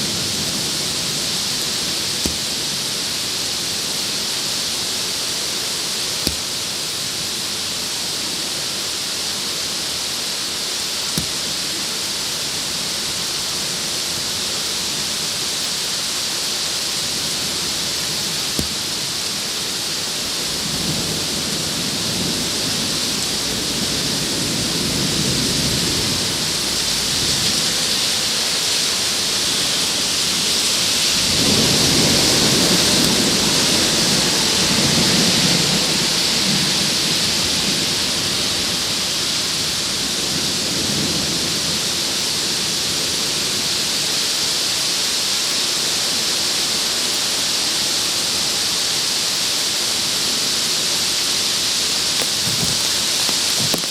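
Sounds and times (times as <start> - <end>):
heavy rain drumming on plastic: 0.0 - 8.2, 29.4 - 38.0, 52.2 - 53.9.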